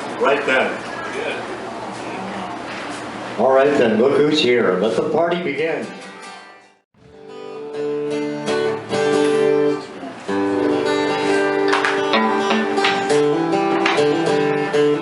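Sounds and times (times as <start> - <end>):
guitar strumming chords: 5.8 - 15.0.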